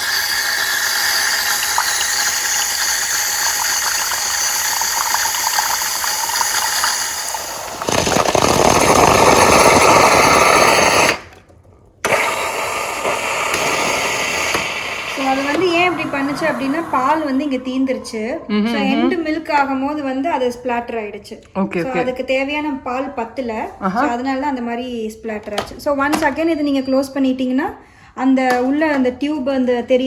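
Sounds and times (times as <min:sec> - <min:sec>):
espresso machine steaming milk: 0:00.0 - 0:11.2, 0:12.0 - 0:19.3
milk frother sputtering: 0:00.0 - 0:11.4, 0:12.0 - 0:18.5.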